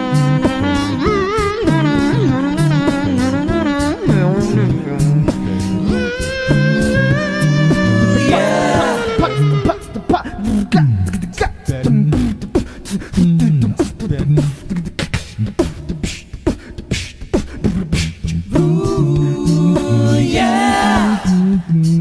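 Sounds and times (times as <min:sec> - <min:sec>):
sung bass line: 0:00.0 - 0:12.5
beatboxed drum sounds: 0:00.0 - 0:22.0
backing voices holding a chord: 0:07.3 - 0:09.6, 0:18.6 - 0:21.6.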